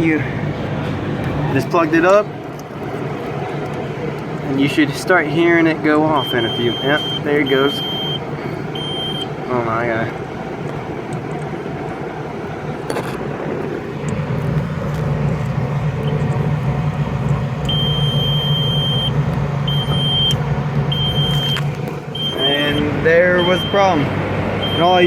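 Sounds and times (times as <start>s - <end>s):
steady low hum: 0.0s - 25.0s
warning buzzer beeps: 6.2s - 9.3s, 17.7s - 21.6s, 22.2s - 25.0s.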